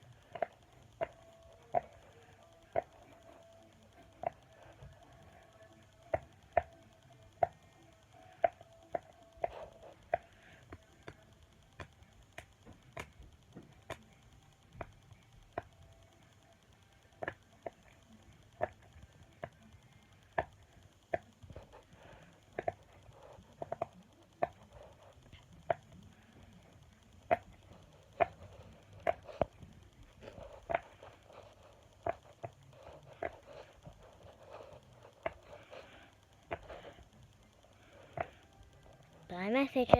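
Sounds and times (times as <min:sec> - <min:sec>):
faint background hum: 0:00.0 - 0:39.9
pop-it fidget toy popping: 0:00.0 - 0:39.9.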